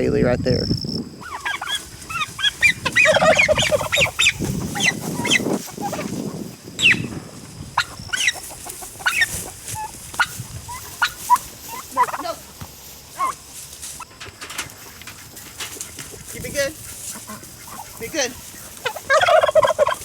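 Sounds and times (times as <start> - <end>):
turkey chirps and yelps: 1.2 - 7.2, 7.8 - 12.5, 13.2 - 13.4, 17.2 - 20.0
turkey gobbling: 1.2 - 7.2, 7.8 - 14.1, 16.9 - 20.0.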